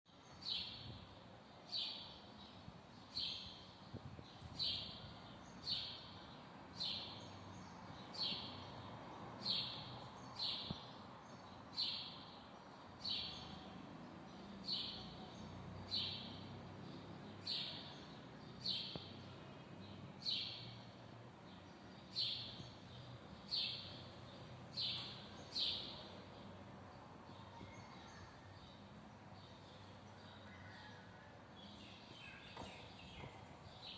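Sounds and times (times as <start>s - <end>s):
faint outdoor background: 0.1s - 33.9s
songbird chirping: 0.1s - 33.9s.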